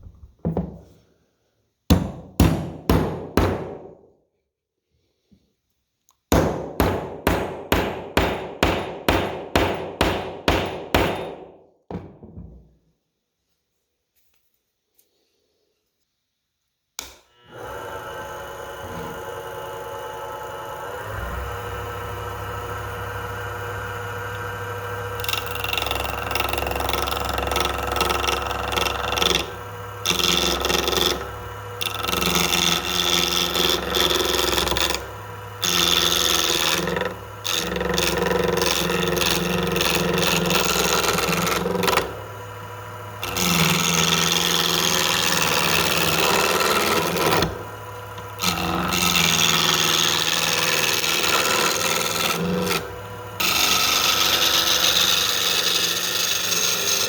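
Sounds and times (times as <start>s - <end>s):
electric shop machine humming: 17.0s - 57.0s.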